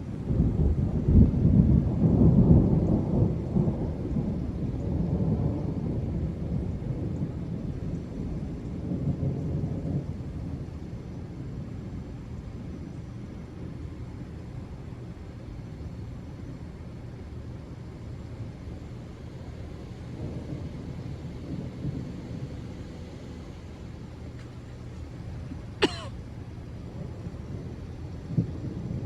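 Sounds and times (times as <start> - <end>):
thunder rolling: 0.1 - 12.8, 19.0 - 24.3, 26.9 - 29.0.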